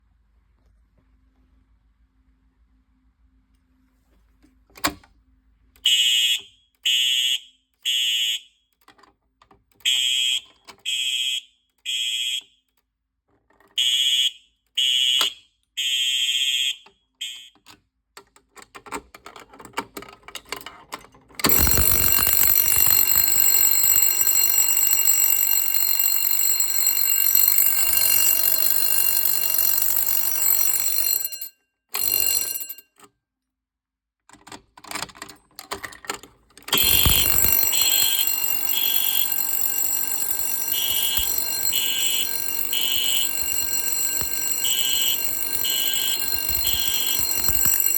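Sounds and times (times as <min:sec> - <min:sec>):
continuous fire alarm: 0:05.8 - 0:08.7, 0:09.8 - 0:12.7, 0:13.8 - 0:17.6, 0:21.5 - 0:32.8, 0:36.7 - 0:47.9
fire alarm beeping: 0:05.9 - 0:08.4, 0:09.8 - 0:12.4, 0:13.8 - 0:17.5, 0:21.5 - 0:32.8, 0:36.7 - 0:47.9.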